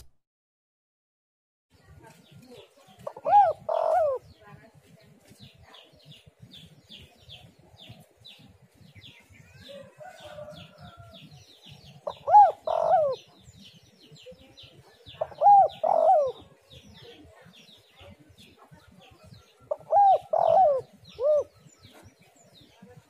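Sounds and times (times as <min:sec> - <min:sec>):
dove cooing: 0:03.0 - 0:04.3, 0:11.8 - 0:13.5, 0:15.0 - 0:16.8, 0:19.4 - 0:22.0.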